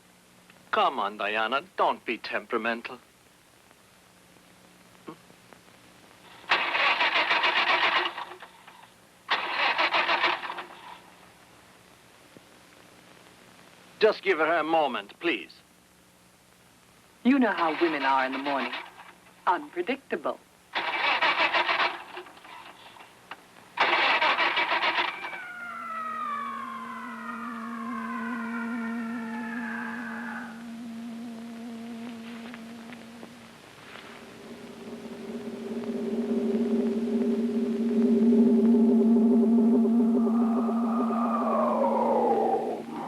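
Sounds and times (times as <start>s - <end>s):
car starter cranking engine: 6.5s - 8.5s, 9.3s - 10.8s, 20.8s - 23.0s, 23.8s - 25.5s
eerie music: 25.4s - 33.3s, 33.9s - 43.0s.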